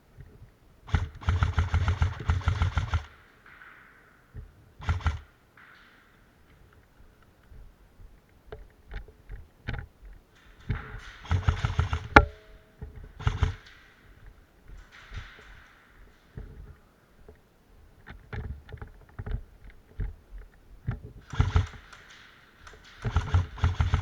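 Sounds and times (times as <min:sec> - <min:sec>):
rustles and thumps: 0:00.0 - 0:24.0
sharp ringing crack: 0:10.5 - 0:16.4
light clicks: 0:18.0 - 0:24.0.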